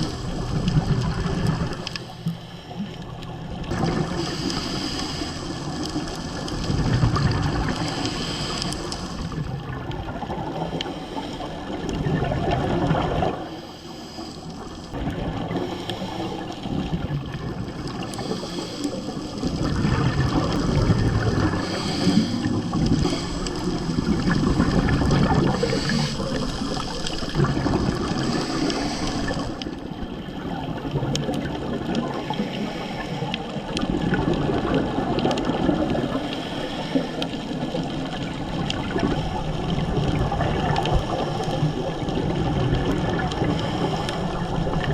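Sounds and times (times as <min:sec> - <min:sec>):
underwater regulator bubbles: 0:00.0 - 0:44.9.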